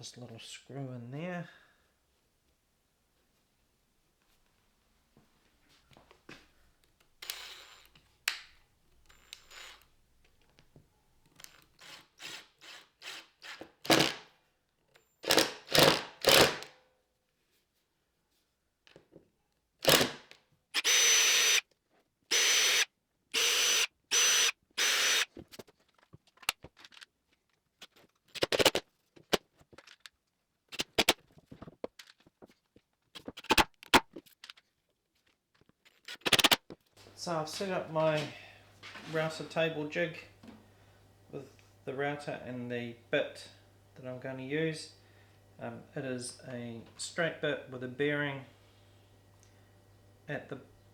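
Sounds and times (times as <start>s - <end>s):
power drill whining: 7.2s - 8.0s, 9.0s - 10.0s, 11.4s - 14.2s, 19.9s - 20.1s, 20.8s - 21.6s, 22.3s - 25.3s.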